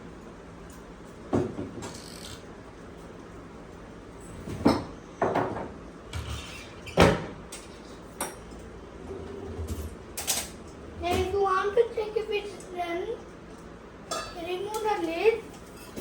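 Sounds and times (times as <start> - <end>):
kitchen items knocking and clattering: 4.4 - 8.5.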